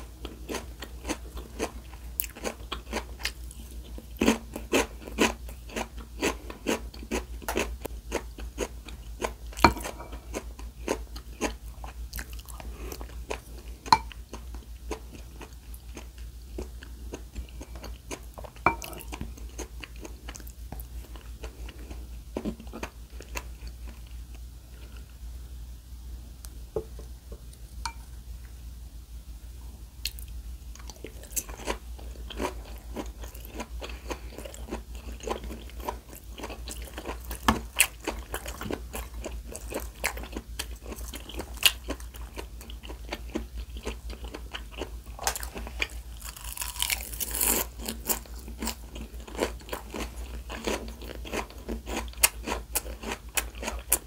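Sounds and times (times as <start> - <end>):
crunchy bites and chewing: 30.0 - 54.0.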